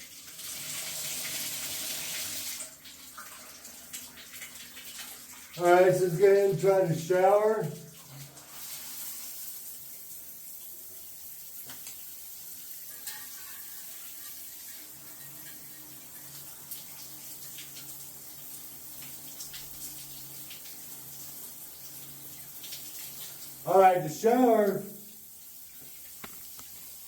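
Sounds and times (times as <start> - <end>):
shower water spraying: 3.5 - 27.0.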